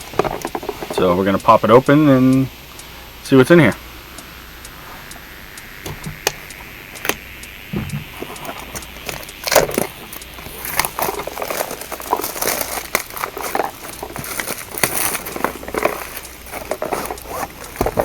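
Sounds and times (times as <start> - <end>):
sharp clicks: 0.0 - 18.0
foil wrapper tearing and crinkling: 8.3 - 18.0.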